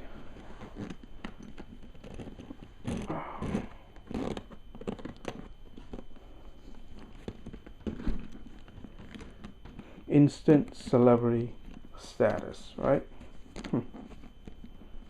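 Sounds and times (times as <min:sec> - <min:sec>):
bag rustling and scraping: 0:00.0 - 0:10.0.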